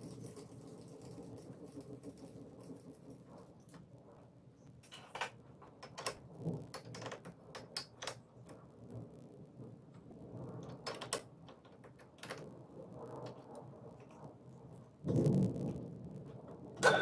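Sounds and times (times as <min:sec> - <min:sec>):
small hard parts clicking: 0:04.8 - 0:08.6.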